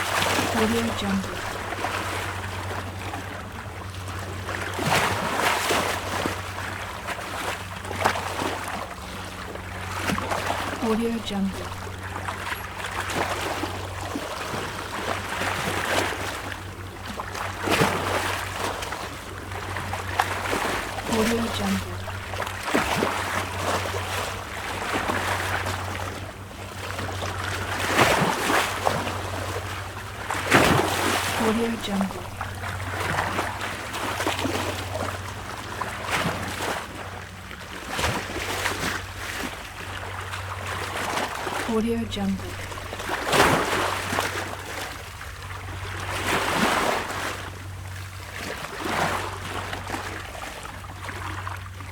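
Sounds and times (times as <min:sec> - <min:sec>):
faint low hum: 0:00.1 - 0:02.3, 0:08.7 - 0:14.6, 0:19.8 - 0:24.2, 0:28.8 - 0:35.2, 0:41.4 - 0:44.9
waves splashing against rocks: 0:30.2 - 0:41.7.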